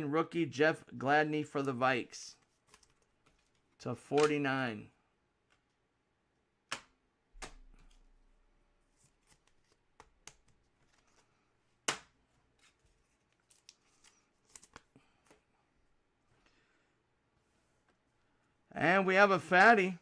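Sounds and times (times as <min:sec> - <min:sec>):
trading cards rustling: 0:02.3 - 0:04.4, 0:08.8 - 0:15.6
cards clicking and tapping: 0:04.2 - 0:04.4, 0:06.7 - 0:08.1, 0:09.0 - 0:11.2.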